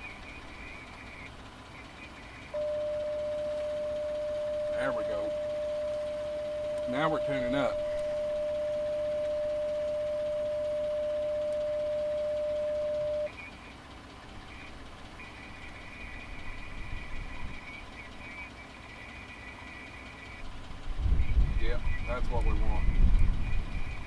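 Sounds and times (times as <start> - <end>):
steady single-pitch tone: 2.5 - 13.4
faint higher steady tone: 2.5 - 13.6
low rumble: 2.6 - 13.3, 20.5 - 24.0.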